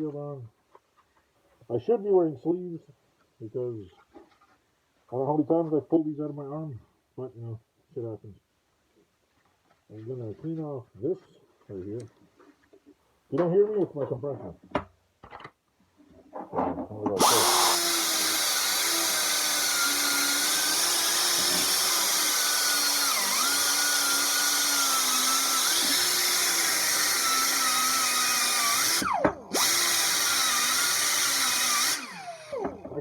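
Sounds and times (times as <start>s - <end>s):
air die grinder whining: 17.2s - 32.9s.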